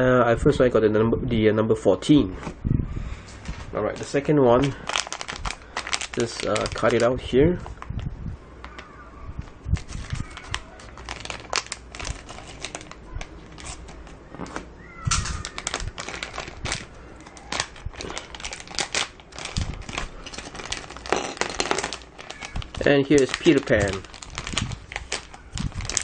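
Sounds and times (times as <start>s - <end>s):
plastic packet crinkling: 3.9s - 8.0s, 8.6s - 9.0s, 9.8s - 14.4s, 15.1s - 26.0s.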